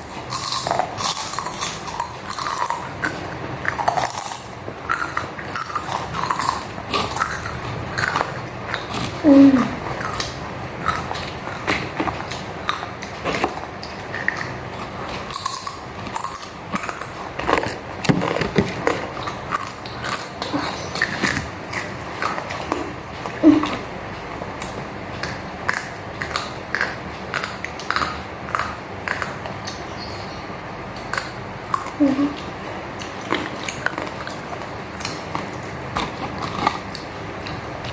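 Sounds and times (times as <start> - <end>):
person chewing: 0.0 - 30.3, 30.9 - 37.9.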